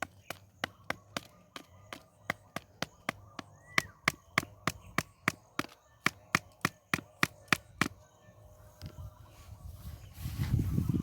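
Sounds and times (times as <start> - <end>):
hand tool chopping: 0.0 - 8.0.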